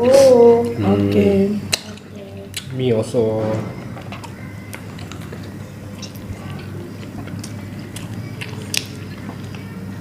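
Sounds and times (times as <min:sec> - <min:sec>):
steady low hum: 0:00.0 - 0:10.0
chewing and biting: 0:03.7 - 0:10.0.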